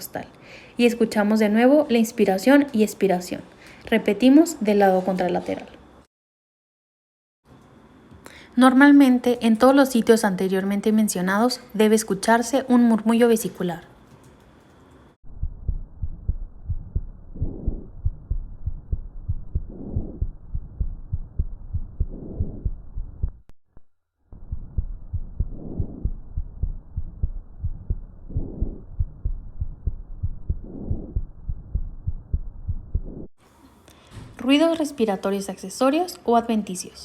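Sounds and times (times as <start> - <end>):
heartbeat thumps: 15.3 - 23.5, 24.4 - 33.3
breath whoosh through stethoscope: 33.4 - 34.4.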